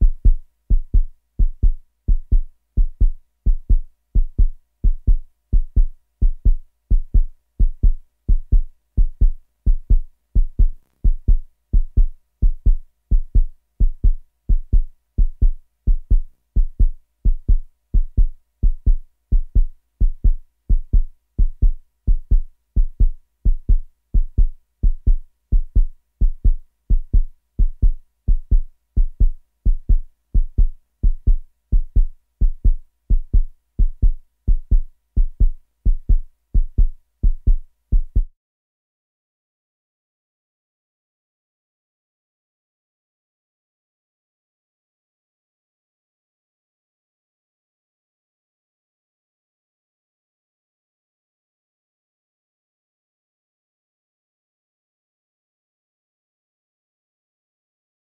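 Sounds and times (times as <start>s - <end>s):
heartbeat thumps: 0.0s - 38.3s.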